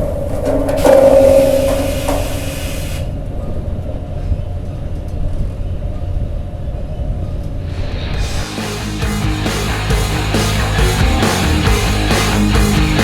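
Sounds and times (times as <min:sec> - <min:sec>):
loud high squeal: 0:00.0 - 0:04.0.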